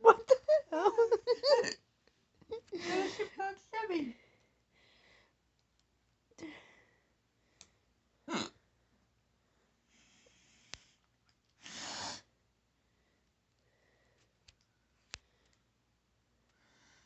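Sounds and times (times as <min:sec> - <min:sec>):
soft breathing: 0:04.1 - 0:05.4, 0:09.4 - 0:15.8, 0:16.4 - 0:17.0
person hiccuping: 0:08.3 - 0:08.6.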